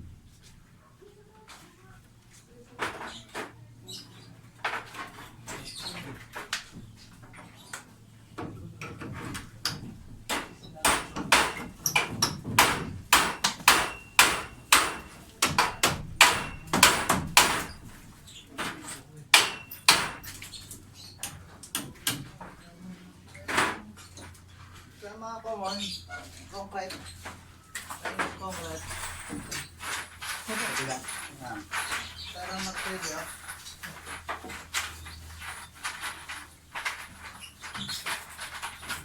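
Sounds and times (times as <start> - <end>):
hammer striking concrete: 9.6 - 17.8, 19.3 - 20.4.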